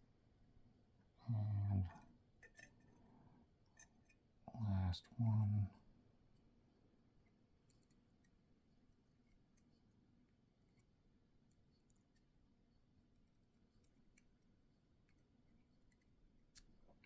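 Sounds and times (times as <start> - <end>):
small clicks of lock parts: 7.6 - 10.0, 10.6 - 12.3, 13.0 - 16.8.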